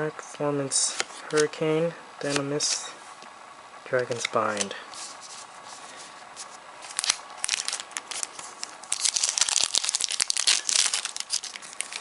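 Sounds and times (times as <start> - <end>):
plastic wrapper crinkling and tearing: 6.8 - 12.0.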